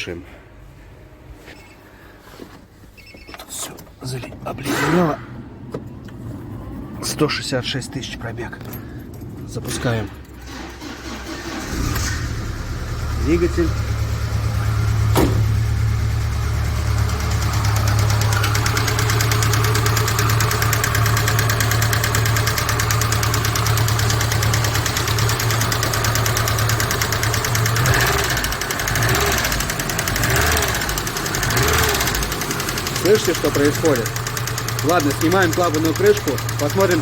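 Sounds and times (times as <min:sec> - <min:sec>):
car engine running: 0:10.3 - 0:37.0
valve train ticking clatter: 0:17.4 - 0:37.0.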